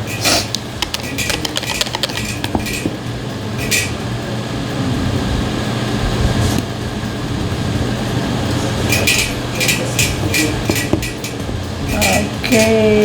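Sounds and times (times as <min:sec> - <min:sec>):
spoon tapping and scraping bowl: 0:00.4 - 0:03.0.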